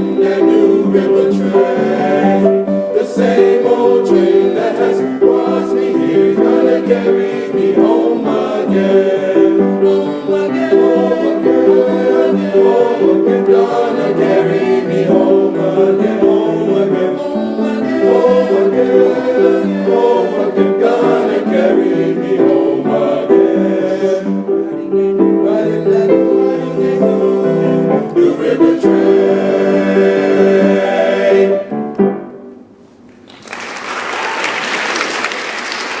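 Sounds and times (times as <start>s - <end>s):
men's chorus singing in harmony: 0.0s - 31.8s
piano accompaniment: 0.0s - 33.0s
audience applause: 33.3s - 36.0s.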